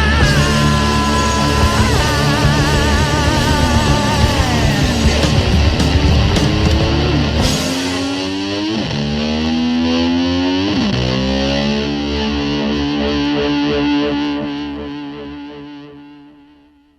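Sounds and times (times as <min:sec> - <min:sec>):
distorted electric slide guitar: 0:00.0 - 0:16.9.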